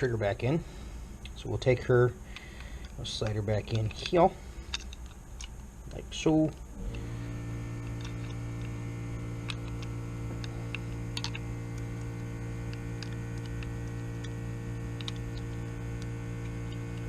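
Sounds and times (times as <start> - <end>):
electrical mains hum: 0.0 - 17.0
small metal parts clicking: 2.3 - 7.0, 9.4 - 17.0.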